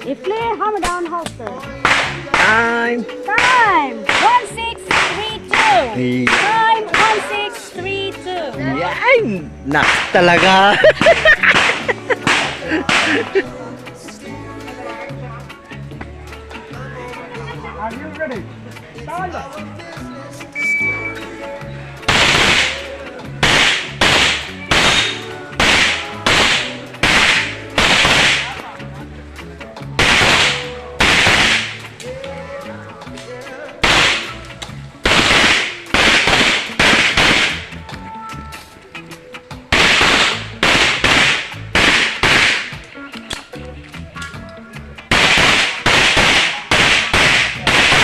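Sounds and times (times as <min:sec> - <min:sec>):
pistol shots with echo: 0:11.5 - 0:13.3, 0:22.1 - 0:28.6, 0:30.0 - 0:31.8, 0:33.8 - 0:34.4, 0:35.1 - 0:37.7, 0:39.7 - 0:42.8, 0:45.1 - 0:48.0.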